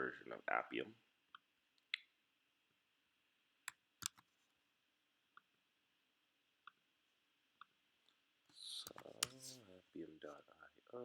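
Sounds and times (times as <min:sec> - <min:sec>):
computer mouse clicks: 0:03.7 - 0:04.3.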